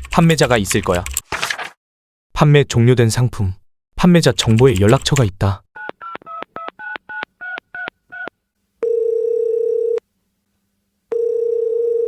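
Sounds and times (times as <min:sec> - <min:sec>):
phone ringback tone: 0:05.8 - 0:10.0, 0:11.1 - 0:12.0.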